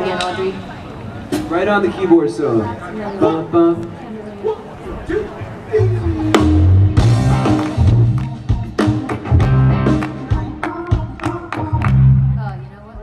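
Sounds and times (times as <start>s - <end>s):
live band playing: 0.0s - 3.5s, 4.9s - 13.0s
bass line: 5.7s - 13.0s
held keyboard chords: 5.8s - 12.5s.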